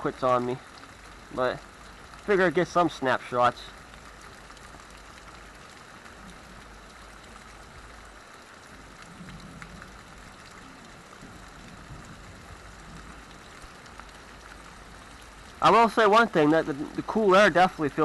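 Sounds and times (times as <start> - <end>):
heavy rain pouring: 0.0 - 18.0.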